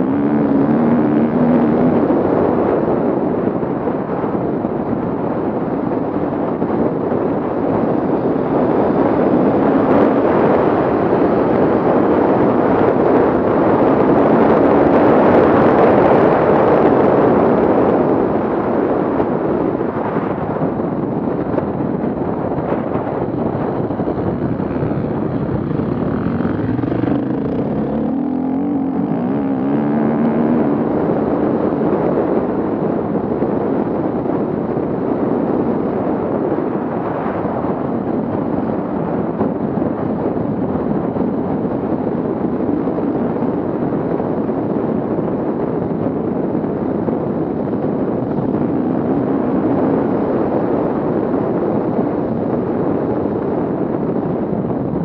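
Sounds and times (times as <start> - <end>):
off-road vehicle engines revving: 0.0 - 2.4, 23.6 - 32.0.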